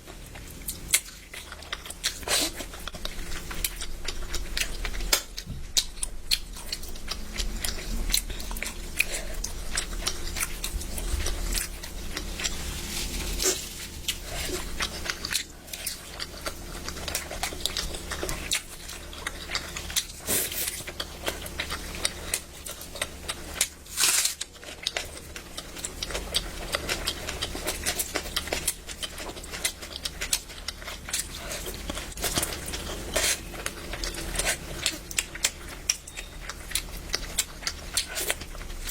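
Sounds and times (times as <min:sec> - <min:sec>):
faint low hum: 0:00.0 - 0:38.9.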